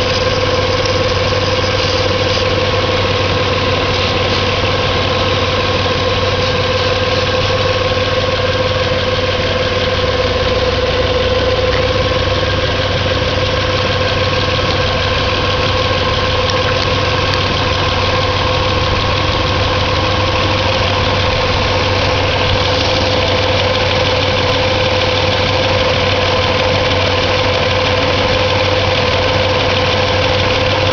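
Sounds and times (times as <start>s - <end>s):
car engine idling: 0.0s - 30.9s
constant whining tone: 0.0s - 30.9s.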